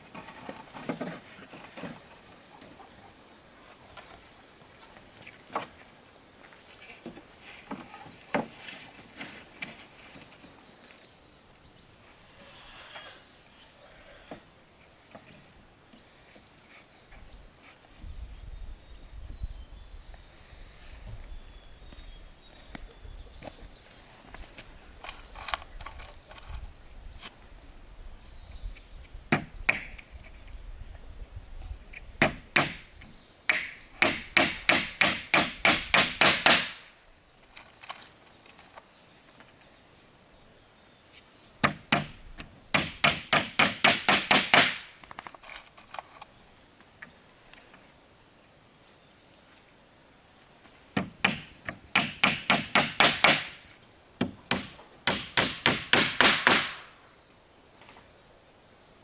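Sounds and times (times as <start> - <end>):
high insect drone: 0.0 - 59.0
hammer driving nails into wood: 32.2 - 32.8, 33.5 - 36.9, 41.6 - 44.9, 51.0 - 53.6, 54.2 - 56.9.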